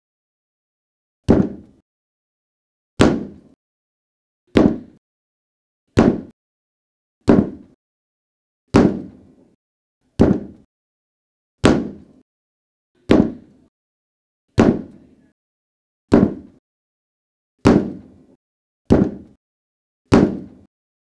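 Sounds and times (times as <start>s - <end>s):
sharp knocks: 1.3s - 1.8s, 6.0s - 6.4s, 10.2s - 10.7s, 17.6s - 18.1s, 18.9s - 19.4s.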